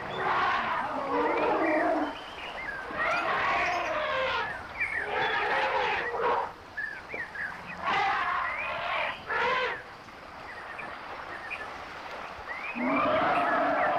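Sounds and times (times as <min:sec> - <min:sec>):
elephants squealing and roaring: 0:00.0 - 0:02.2, 0:07.8 - 0:09.8, 0:12.8 - 0:13.9.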